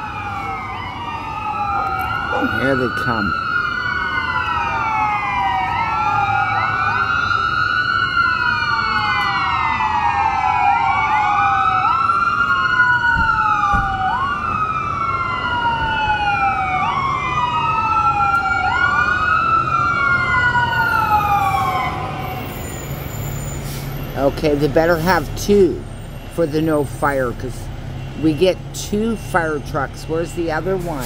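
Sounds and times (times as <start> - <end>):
fire truck siren wailing: 0.0 - 31.0
truck engine rumble: 11.4 - 31.0.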